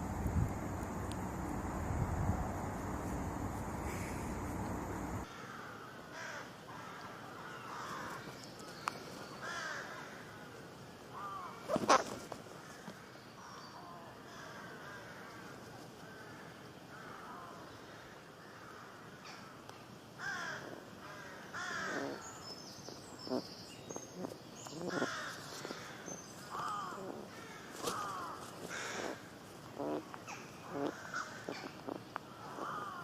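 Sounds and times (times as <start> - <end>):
birds calling: 0.0 - 5.6, 11.2 - 15.0, 16.9 - 33.0.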